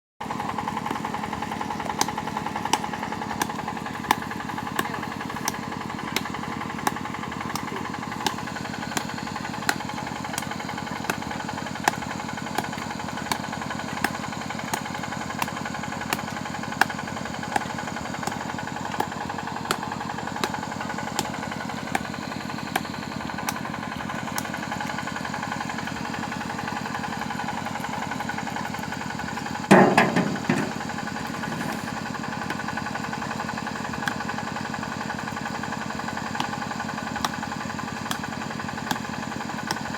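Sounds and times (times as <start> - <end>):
engine-driven drilling machine: 0.2 - 39.9
sharp knocking: 29.7 - 30.8.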